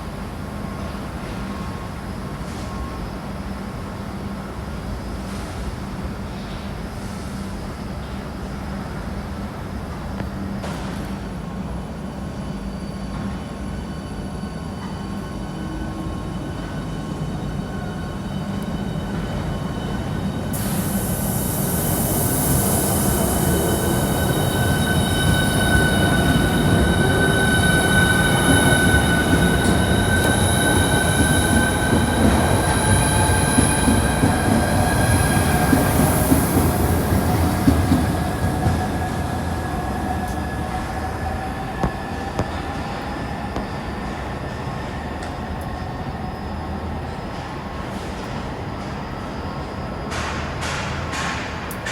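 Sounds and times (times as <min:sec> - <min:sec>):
train rumble: 0:00.0 - 0:51.9
high whining squealing tones: 0:12.6 - 0:47.4
hiss: 0:20.4 - 0:26.2.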